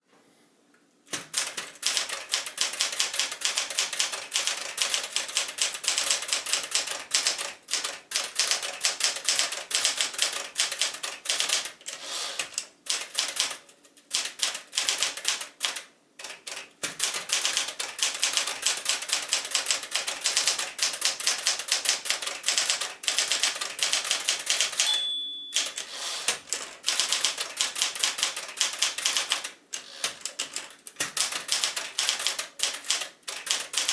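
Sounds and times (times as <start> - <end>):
typewriter keystrikes: 1.1 - 33.9
typewriter bell ringing: 24.7 - 25.9.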